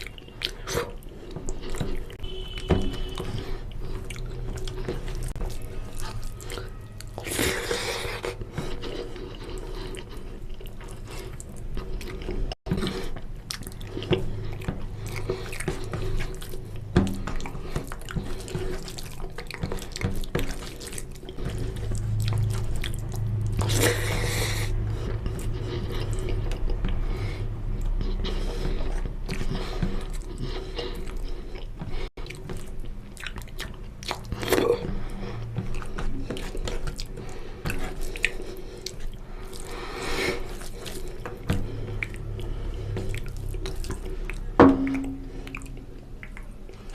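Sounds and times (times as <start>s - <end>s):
close-up chewing: 0.0s - 46.9s
low hum: 41.5s - 46.2s.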